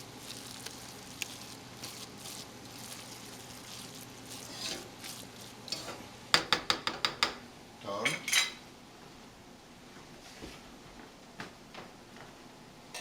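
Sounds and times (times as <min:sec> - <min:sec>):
risotto stirred in pan: 0:00.0 - 0:07.2.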